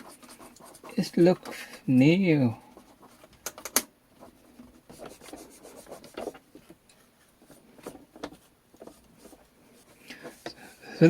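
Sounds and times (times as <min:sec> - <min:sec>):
light taps and rubbing: 0:03.0 - 0:09.5.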